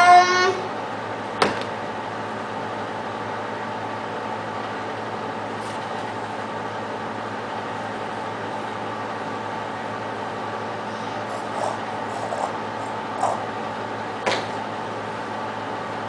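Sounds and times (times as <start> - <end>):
mechanical hum with hiss: 0.0 - 16.0.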